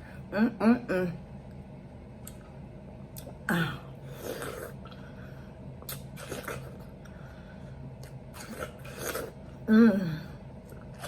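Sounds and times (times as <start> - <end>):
wet chewing and slurping: 4.1 - 5.0, 5.8 - 7.1, 8.0 - 9.6.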